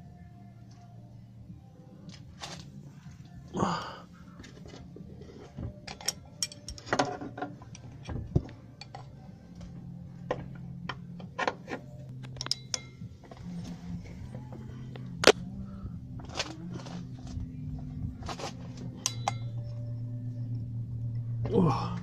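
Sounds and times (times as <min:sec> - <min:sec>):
low steady hum: 0:00.0 - 0:22.0
spanner clinking on bolts: 0:05.8 - 0:08.2, 0:12.1 - 0:13.1, 0:18.3 - 0:19.7.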